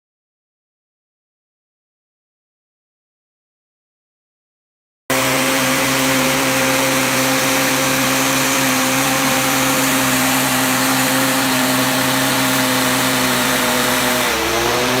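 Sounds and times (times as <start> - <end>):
pressure washer spraying: 5.1 - 15.0.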